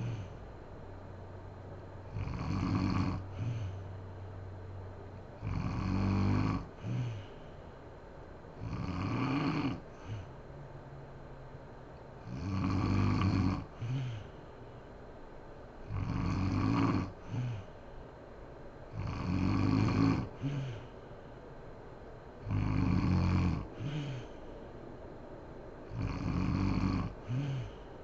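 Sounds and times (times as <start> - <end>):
woman snoring: 0.0 - 0.4, 2.1 - 3.8, 5.4 - 7.5, 8.6 - 10.3, 12.2 - 14.4, 15.8 - 17.8, 18.9 - 20.9, 22.4 - 24.4, 25.9 - 27.9.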